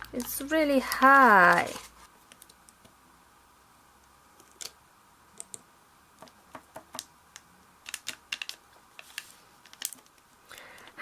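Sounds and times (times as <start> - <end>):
plastic toys clicking and tapping: 0.0 - 1.7, 6.2 - 11.0.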